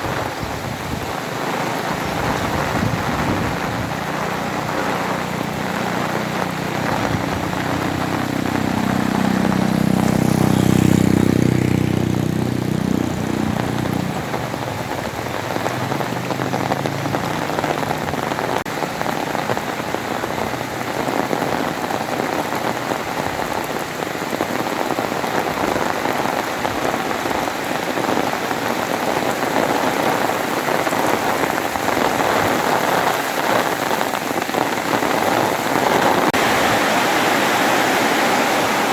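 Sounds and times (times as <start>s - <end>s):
heavy rain: 0.0s - 38.9s
vehicle engine hum: 1.8s - 18.8s.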